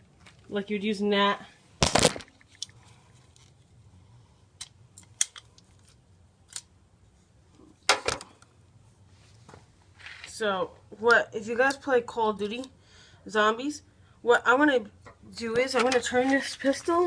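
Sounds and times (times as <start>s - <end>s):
cap pistol crack: 1.8s - 2.3s.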